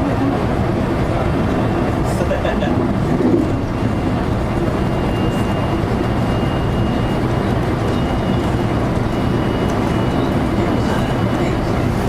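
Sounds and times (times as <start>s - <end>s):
electric train rumbling: 0.0s - 12.0s.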